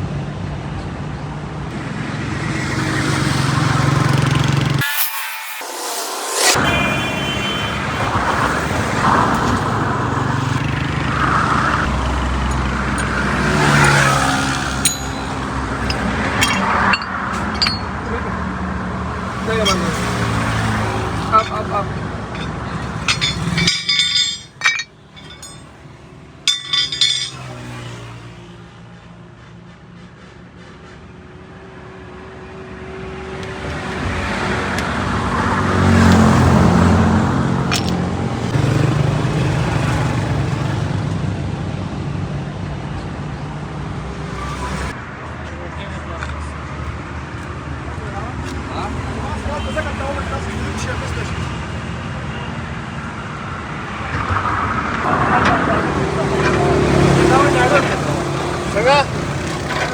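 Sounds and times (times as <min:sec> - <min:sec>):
road noise: 0:00.0 - 0:59.9
metal tools clinking: 0:11.8 - 0:18.4, 0:19.4 - 0:25.7, 0:26.5 - 0:27.9, 0:37.7 - 0:38.0, 0:55.4 - 0:59.9.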